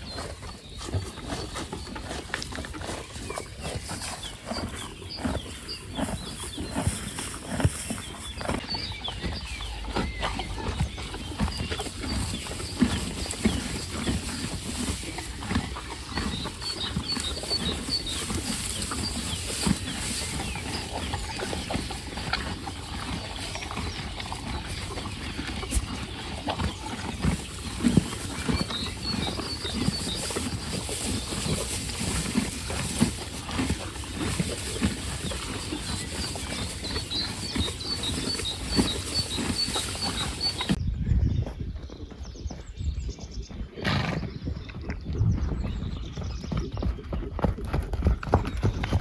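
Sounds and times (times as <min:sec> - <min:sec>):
horses chewing hay: 0:00.0 - 0:40.8.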